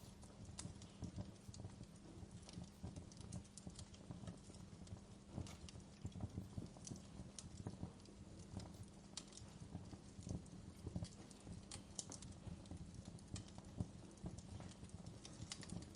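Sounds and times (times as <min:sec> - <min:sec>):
wood fire crackling: 0:00.0 - 0:15.9.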